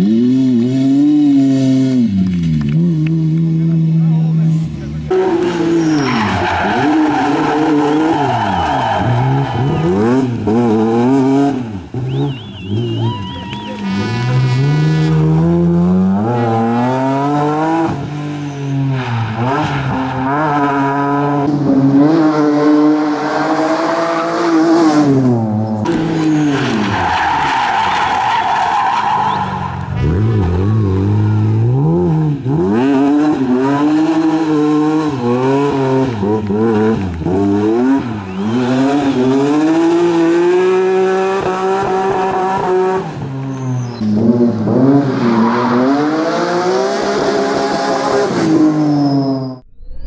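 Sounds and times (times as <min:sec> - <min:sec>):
rally car engine revving: 0:00.0 - 0:49.6
tyres squealing: 0:05.4 - 0:10.2.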